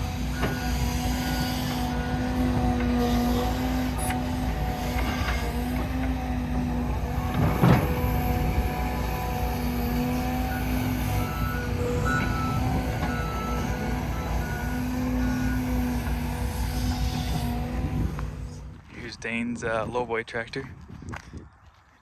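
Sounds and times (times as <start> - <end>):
heavy diesel machinery running: 0.0 - 19.2.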